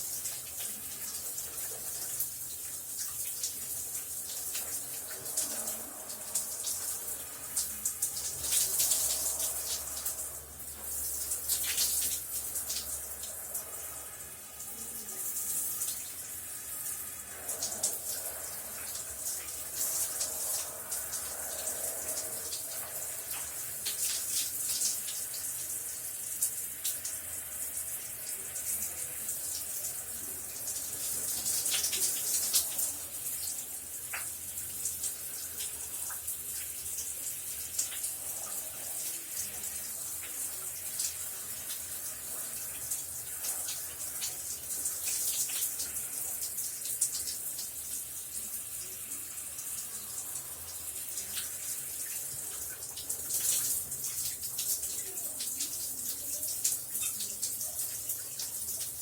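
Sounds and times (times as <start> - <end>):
shower running: 0.0 - 59.0.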